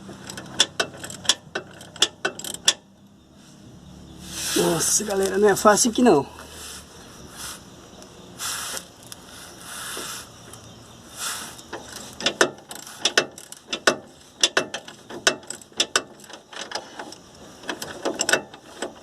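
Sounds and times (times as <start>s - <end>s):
ratchet wrench clicking: 0.1s - 2.9s, 11.5s - 19.0s
soft hisses: 3.3s - 12.1s.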